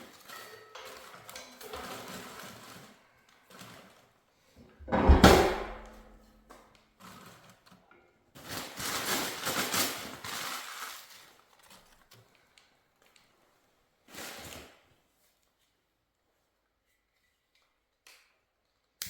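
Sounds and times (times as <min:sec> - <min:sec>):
rustling and crackling handling noise: 0:00.0 - 0:04.2, 0:06.5 - 0:14.7
loud knock: 0:04.9 - 0:06.0.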